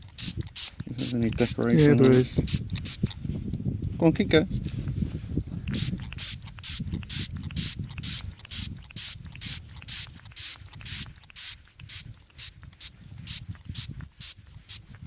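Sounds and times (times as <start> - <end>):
water squirting from bottle: 5.7 - 14.4.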